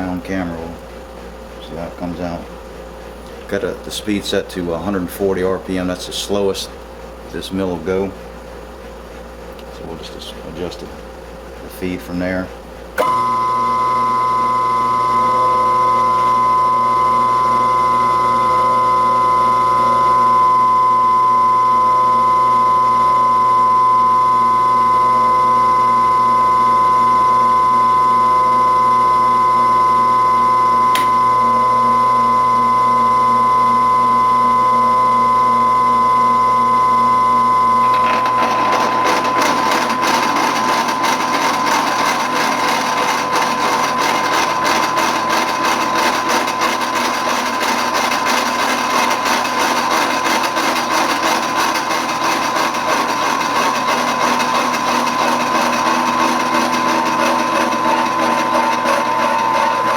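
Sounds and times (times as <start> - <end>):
slitting saw whine cutting steel: 36.8 - 59.9.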